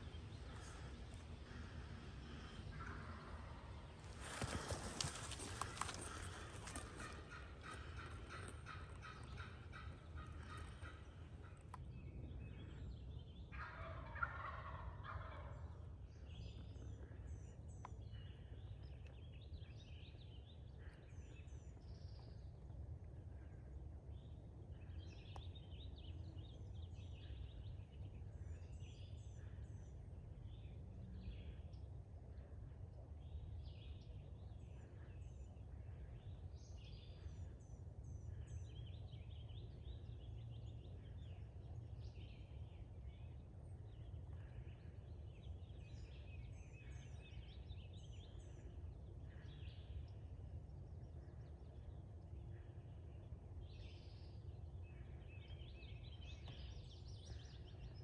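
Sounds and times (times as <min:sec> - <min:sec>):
distant turkey gobbling: 0:00.0 - 0:11.6, 0:13.5 - 0:15.8
songbirds chirping and singing: 0:00.0 - 0:22.6, 0:24.2 - 0:58.0.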